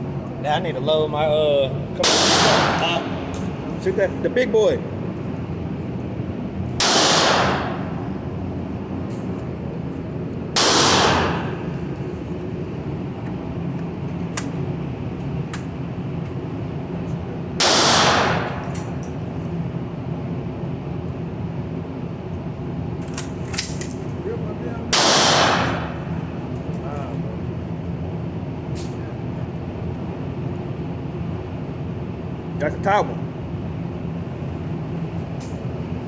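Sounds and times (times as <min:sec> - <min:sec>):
loud gunshots with echo: 0:02.0 - 0:03.3, 0:06.8 - 0:08.1, 0:10.6 - 0:11.7, 0:17.6 - 0:18.6, 0:24.9 - 0:26.0.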